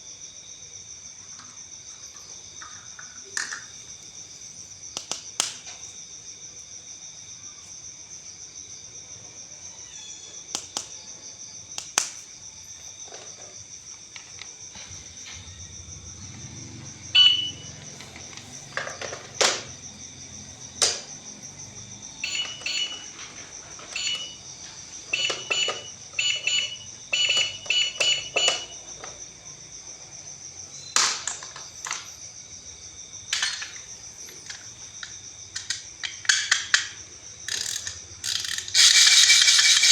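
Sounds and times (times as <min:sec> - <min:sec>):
plastic toys clicking and knocking: 0:01.3 - 0:03.8, 0:05.0 - 0:05.8, 0:10.6 - 0:11.0, 0:13.0 - 0:14.8, 0:17.8 - 0:19.8, 0:20.8 - 0:21.1, 0:25.0 - 0:29.2, 0:30.9 - 0:32.1, 0:33.3 - 0:39.9
high-pitched electronic whine: 0:15.0 - 0:17.8
short electronic beeps: 0:17.2 - 0:17.7, 0:23.9 - 0:24.4, 0:25.1 - 0:28.8.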